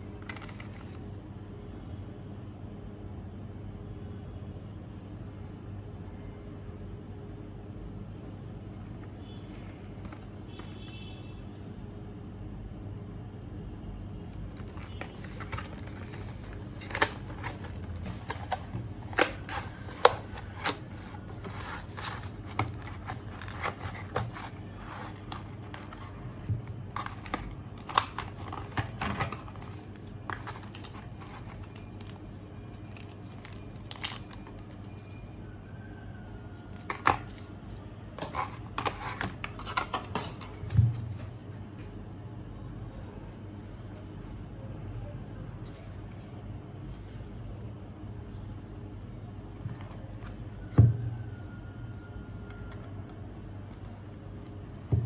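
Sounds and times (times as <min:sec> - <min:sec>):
plastic and cardboard crinkling: 0:00.2 - 0:01.0, 0:14.4 - 0:35.2, 0:36.7 - 0:37.5, 0:38.2 - 0:41.3.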